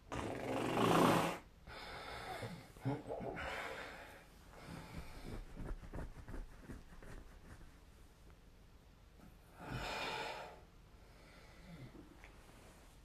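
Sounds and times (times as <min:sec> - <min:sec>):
person snoring: 0:00.0 - 0:01.4.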